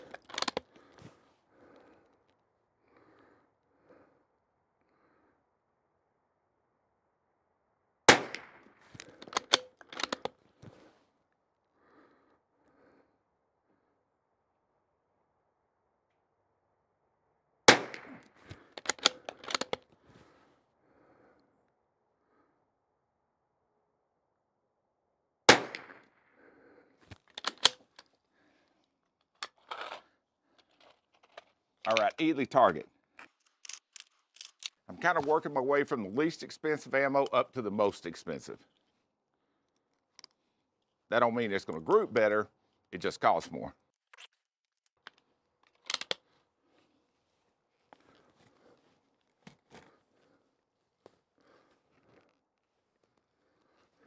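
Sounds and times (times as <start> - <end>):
rifle bolt metallic clicks: 0.0 - 0.8, 9.0 - 10.4, 18.7 - 19.9, 27.2 - 28.1, 45.0 - 46.2
clicks and rustling of rifle handling: 0.0 - 2.4, 8.3 - 11.0, 17.9 - 20.4, 27.0 - 35.4, 39.7 - 40.5, 44.0 - 47.0, 47.7 - 50.4, 51.0 - 54.0
rifle shot: 8.1 - 8.6, 17.7 - 18.2, 25.5 - 26.0.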